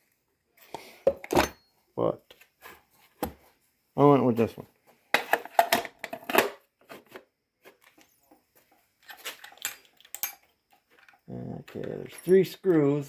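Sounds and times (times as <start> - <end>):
metal parts clicking and rattling: 9.0 - 13.0.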